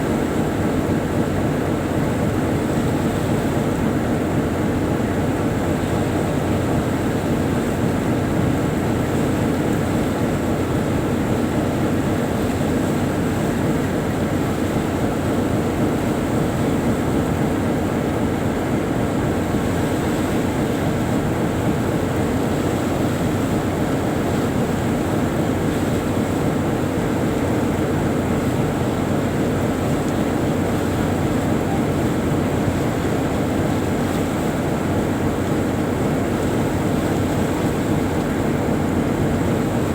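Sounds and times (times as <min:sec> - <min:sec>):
boat diesel engine drone: 0:00.0 - 0:39.9.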